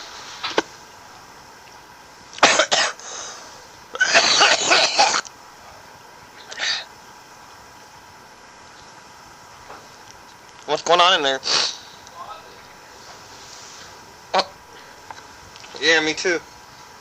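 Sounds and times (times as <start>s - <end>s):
man coughing hard: 2.4s - 3.0s, 3.9s - 5.3s.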